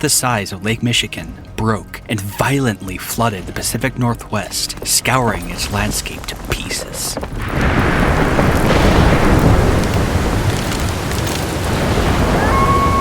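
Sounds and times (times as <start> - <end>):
rushing flood roar: 7.6 - 13.0.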